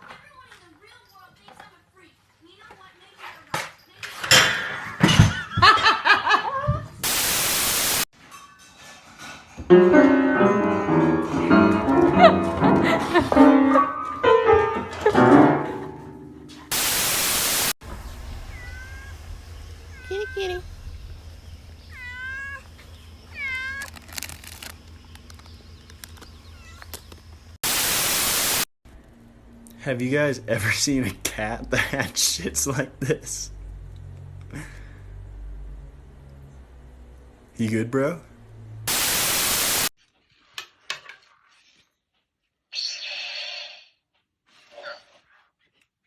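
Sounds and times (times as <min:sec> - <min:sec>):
loud white-noise static: 0:07.0 - 0:08.1, 0:16.7 - 0:17.8, 0:27.6 - 0:28.7, 0:38.9 - 0:39.9
piano music: 0:09.7 - 0:16.6
cat meowing: 0:18.4 - 0:20.6, 0:21.9 - 0:24.0.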